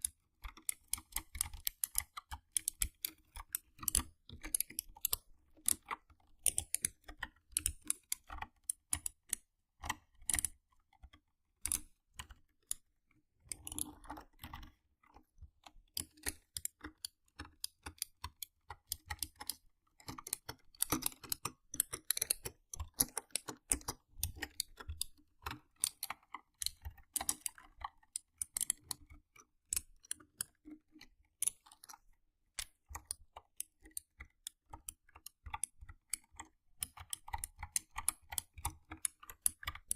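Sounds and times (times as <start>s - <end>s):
mechanical keyboard typing: 32.6s - 39.9s.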